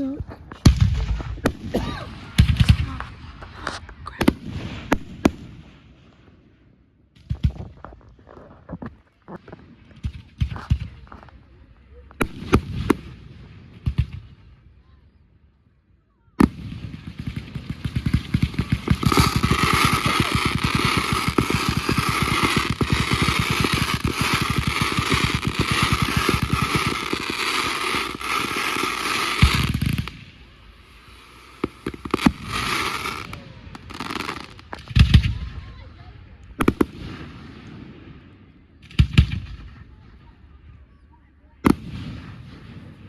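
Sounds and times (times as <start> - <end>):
fireworks crackling pops: 0.0 - 5.6, 7.2 - 11.5, 16.4 - 35.4, 36.5 - 37.4
firework bang: 16.4 - 30.2
fireworks hiss: 18.4 - 34.6.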